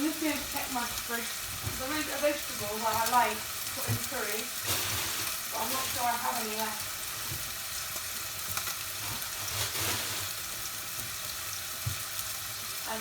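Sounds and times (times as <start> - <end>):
chicken sizzling in oil: 0.0 - 13.0.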